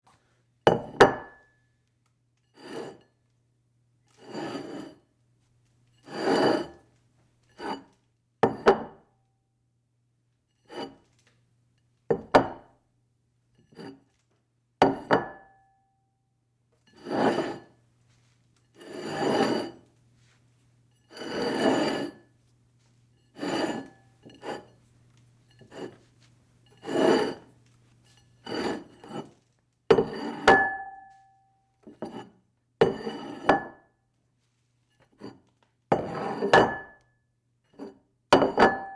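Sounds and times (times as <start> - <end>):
dish scraping across a table: 2.6 - 3.1, 4.1 - 5.0, 6.0 - 6.9, 7.5 - 8.0, 16.9 - 17.8, 18.8 - 20.3, 21.1 - 22.3, 23.3 - 24.8, 25.5 - 27.5, 28.1 - 30.9, 32.0 - 33.6, 36.0 - 36.9
dish knocks and clinks: 38.4 - 38.9.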